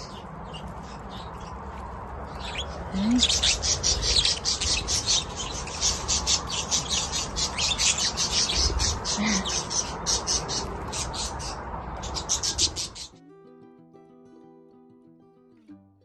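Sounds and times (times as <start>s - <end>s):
budgerigars chirping: 0.0s - 13.1s.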